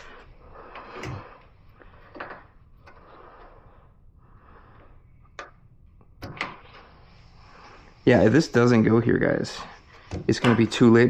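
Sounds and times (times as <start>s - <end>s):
faint steady background noise: 0.0s - 11.0s
light knocks and clicks of metal parts: 9.9s - 11.0s.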